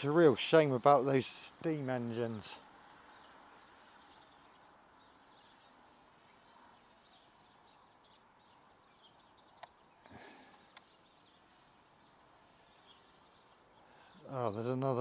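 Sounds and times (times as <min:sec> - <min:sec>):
faint outdoor hiss: 0:00.0 - 0:15.0
high bird chirps: 0:02.8 - 0:14.6
small clicks: 0:09.4 - 0:09.8, 0:10.5 - 0:11.0.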